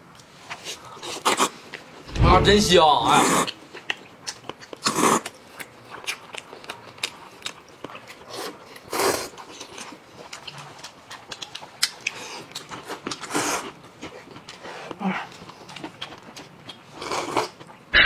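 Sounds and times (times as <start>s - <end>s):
person chewing and lip-smacking: 3.5s - 17.8s.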